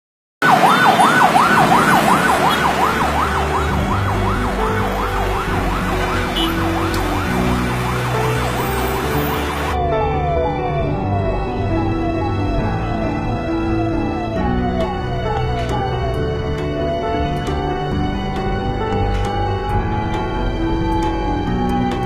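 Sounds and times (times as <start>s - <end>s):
ambulance siren yelp: 0.4s - 22.0s
falling siren sweep: 0.4s - 22.0s.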